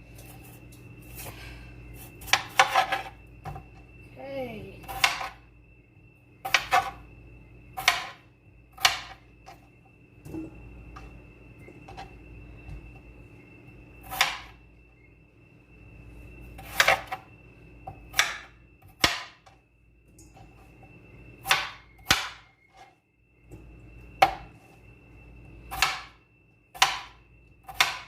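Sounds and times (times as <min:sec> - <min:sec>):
knife chopping potatoes on board: 0:02.2 - 0:03.6, 0:04.8 - 0:05.4, 0:06.4 - 0:07.0, 0:07.8 - 0:08.2, 0:08.8 - 0:09.2, 0:14.1 - 0:14.5, 0:16.6 - 0:17.2, 0:17.9 - 0:19.4, 0:21.4 - 0:22.4, 0:25.7 - 0:26.1, 0:26.8 - 0:28.0.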